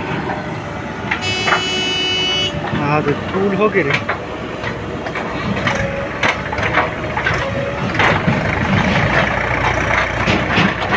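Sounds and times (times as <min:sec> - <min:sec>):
background rumble: 0:02.6 - 0:10.9
gravel crunching and clattering: 0:02.6 - 0:10.9.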